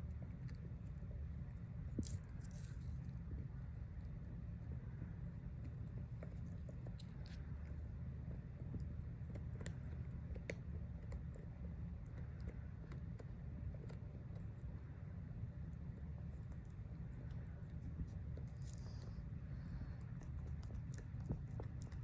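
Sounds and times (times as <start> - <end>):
steady low hum: 0.0 - 22.0
puppy gnawing hard chew: 5.6 - 22.0.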